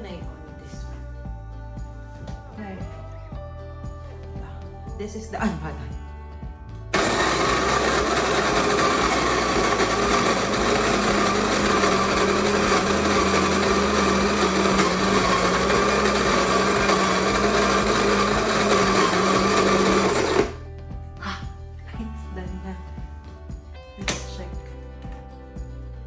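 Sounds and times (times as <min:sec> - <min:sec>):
coffee grinder grinding beans: 0:07.0 - 0:20.6.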